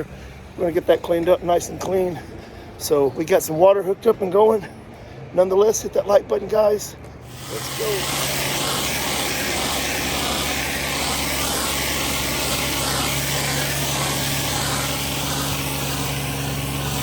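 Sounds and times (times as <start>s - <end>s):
pressure washer engine running: 7.2s - 17.0s
water spraying onto concrete: 7.3s - 17.0s.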